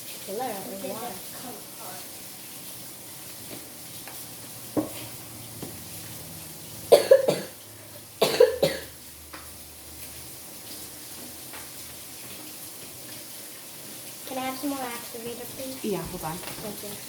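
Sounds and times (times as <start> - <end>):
person coughing: 6.9 - 7.6, 8.2 - 8.9.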